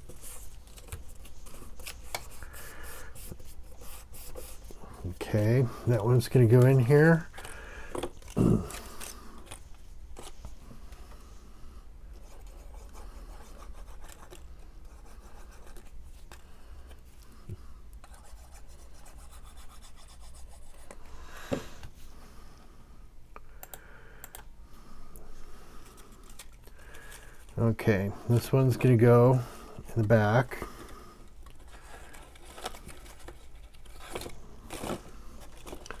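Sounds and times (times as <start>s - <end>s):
cardstock rubbing and scraping: 0.0s - 10.5s.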